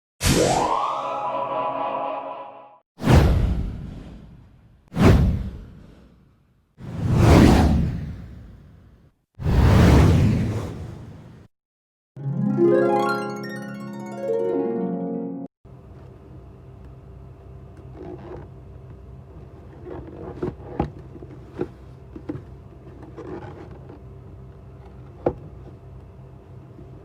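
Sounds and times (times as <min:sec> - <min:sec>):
plucked harp-like music: 0:12.2 - 0:15.5.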